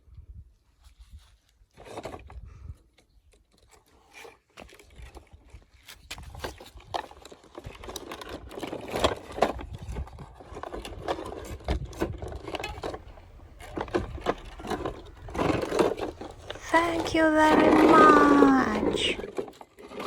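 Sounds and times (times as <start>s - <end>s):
toy cars clicking and scraping: 10.6s - 16.6s.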